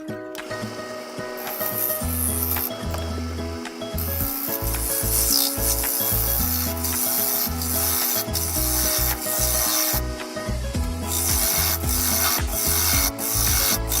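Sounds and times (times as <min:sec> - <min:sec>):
background music with bass: 0:00.0 - 0:14.0
sandpaper rasping on turning wood: 0:01.4 - 0:02.8, 0:03.8 - 0:10.2, 0:11.1 - 0:14.0.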